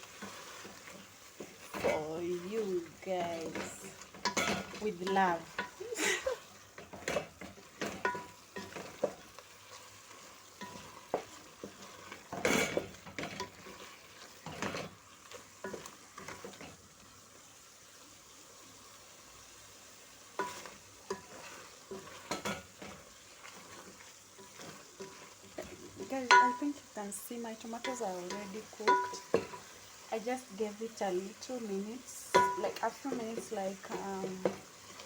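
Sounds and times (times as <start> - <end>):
stew sizzling in a metal pot: 0.0 - 35.0
clinks and knocks against pot: 28.9 - 29.6.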